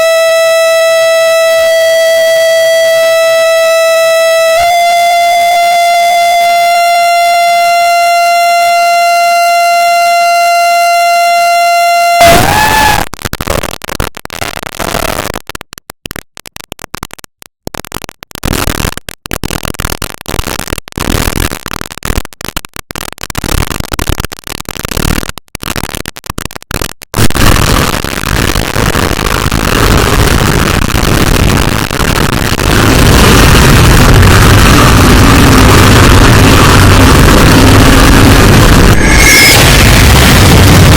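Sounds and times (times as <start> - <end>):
loud harsh noise: 0.0 - 13.8, 27.2 - 40.9
loud roar with deep rumble: 29.5 - 40.9.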